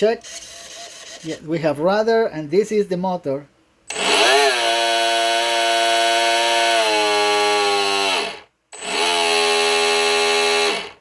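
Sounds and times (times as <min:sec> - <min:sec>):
electric motor whine: 0:03.9 - 0:11.0.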